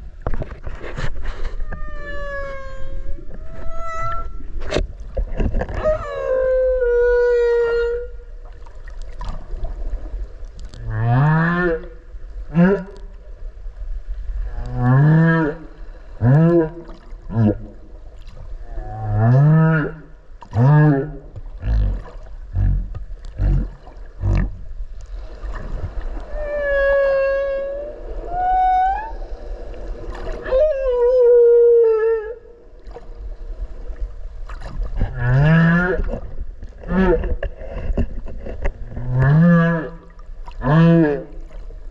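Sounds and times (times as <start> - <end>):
humpback whale song: 0.0 - 10.2, 10.8 - 38.0, 38.7 - 41.9
low underwater rumble: 0.0 - 41.9.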